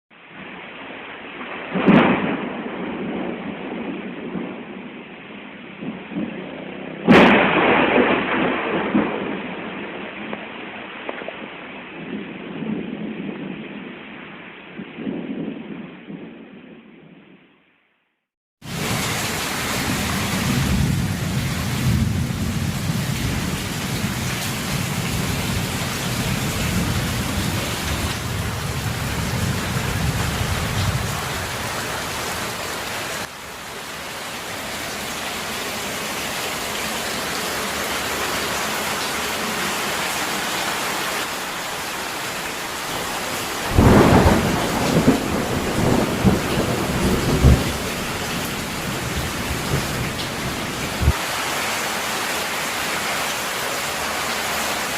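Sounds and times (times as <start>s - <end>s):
heavy rain falling: 0.2s - 15.3s, 18.6s - 54.9s
loud thunderclap: 1.4s - 4.9s, 5.8s - 13.6s, 18.7s - 33.2s, 43.6s - 51.2s
low rolling thunder: 1.4s - 13.9s, 18.7s - 33.3s, 42.5s - 51.2s.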